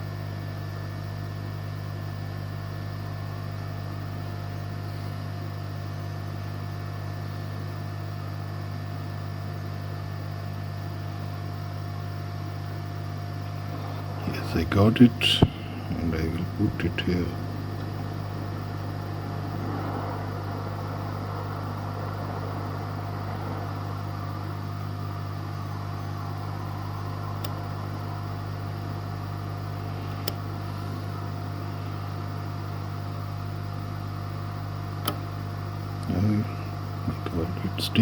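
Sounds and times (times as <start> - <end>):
electrical hum: 0.0 - 38.0
fan whoosh: 17.1 - 32.2.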